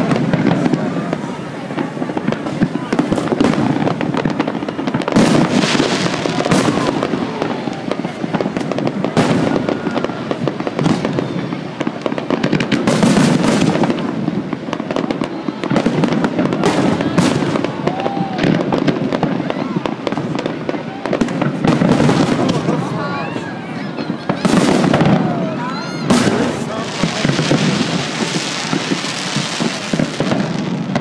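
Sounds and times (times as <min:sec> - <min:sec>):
fireworks bangs and crackling: 0:00.0 - 0:31.0.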